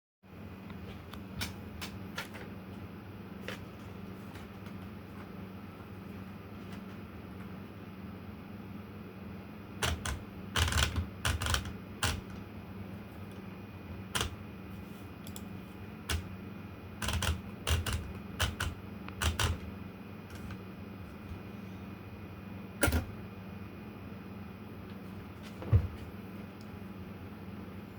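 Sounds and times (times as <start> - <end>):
typewriter key strikes: 9.8 - 12.4, 17.0 - 19.7, 22.8 - 23.1.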